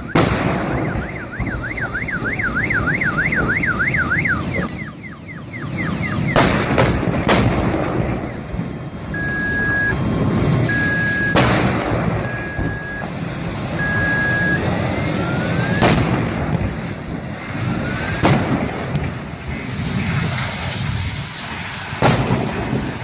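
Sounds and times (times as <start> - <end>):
car alarm warbling: 0.0 - 6.4, 9.1 - 10.0, 10.6 - 11.4, 12.2 - 13.1, 13.8 - 15.8
long beeps: 0.0 - 6.4, 9.1 - 10.0, 10.6 - 11.4, 12.2 - 13.1, 13.8 - 15.8
continuous rumbling: 0.0 - 23.0
sharp bangs: 0.0 - 23.0.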